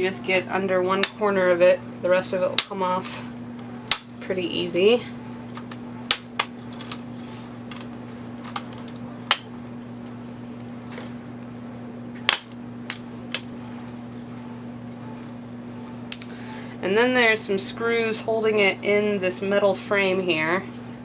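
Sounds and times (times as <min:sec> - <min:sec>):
plastic clips snapping: 0:08.5 - 0:09.5.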